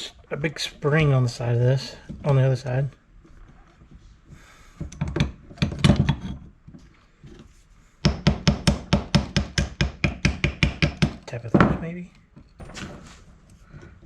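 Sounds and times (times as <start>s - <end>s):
hammer tapping on metal: 8.0s - 11.2s.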